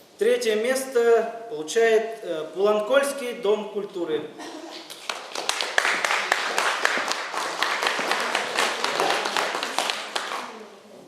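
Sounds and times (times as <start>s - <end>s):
audience applauding: 4.9s - 10.6s.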